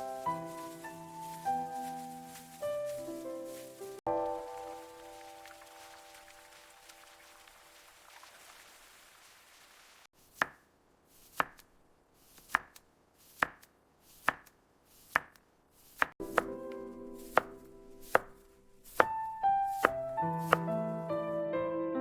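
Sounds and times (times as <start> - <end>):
soft piano music: 0.0 - 7.6, 16.2 - 22.0
knife chopping on cutting board: 10.3 - 11.6, 12.3 - 16.6, 17.2 - 20.7.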